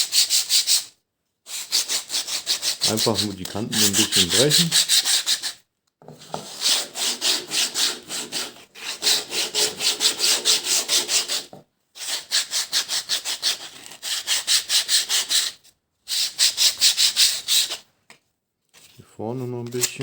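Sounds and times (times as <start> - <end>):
sandpaper rasping on wood: 1.5 - 5.6, 6.4 - 17.8.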